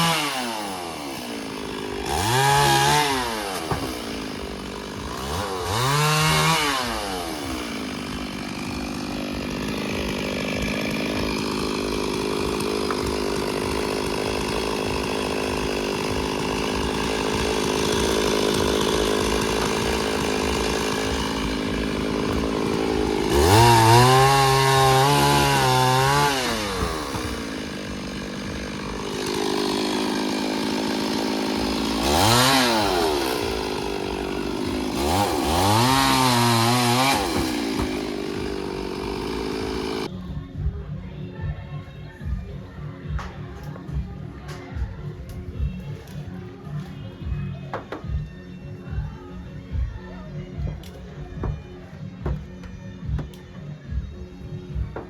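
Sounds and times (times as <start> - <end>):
chainsaw cutting wood: 0.0 - 40.2, 43.0 - 49.9, 50.6 - 55.0
chainsaw revving: 0.0 - 40.2.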